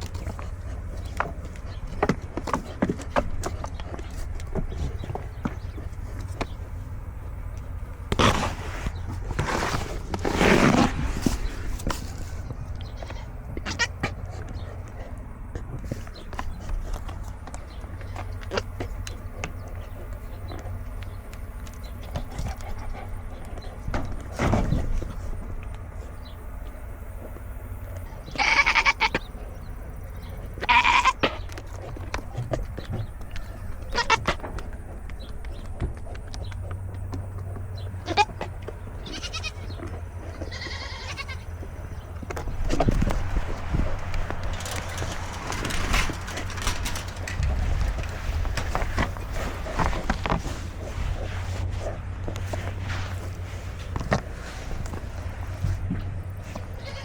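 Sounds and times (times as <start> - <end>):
rustling and scraping: 0.0 - 57.0
goat bleating: 12.8 - 14.3, 28.3 - 29.2, 30.6 - 31.4, 33.8 - 34.4, 38.0 - 41.7, 56.5 - 57.0.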